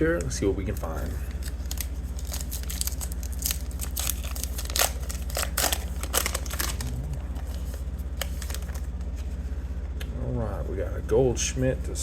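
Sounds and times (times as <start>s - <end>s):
steady low hum: 0.0s - 12.0s
foil wrapper tearing and crinkling: 0.2s - 8.9s.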